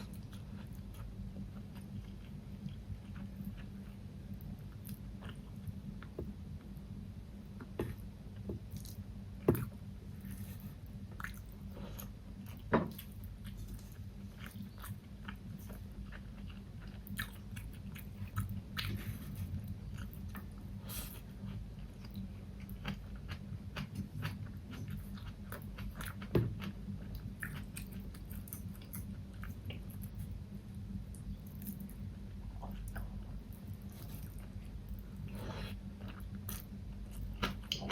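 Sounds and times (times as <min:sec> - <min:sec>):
steady low hum: 0:00.0 - 0:37.9
chewing and biting food: 0:08.6 - 0:30.3.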